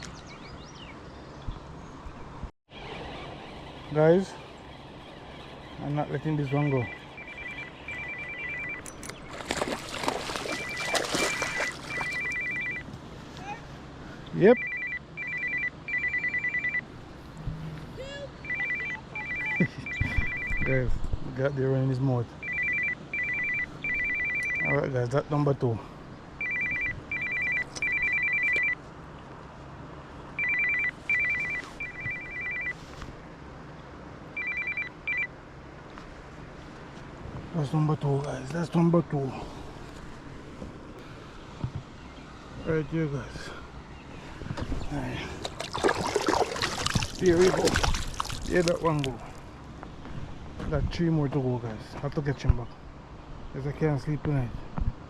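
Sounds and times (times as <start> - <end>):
electronic ringer trilling: 6.4 - 9.0, 10.6 - 12.8, 18.4 - 20.7, 22.4 - 24.8, 26.4 - 28.8
water splashing: 9.0 - 12.7, 44.8 - 49.5.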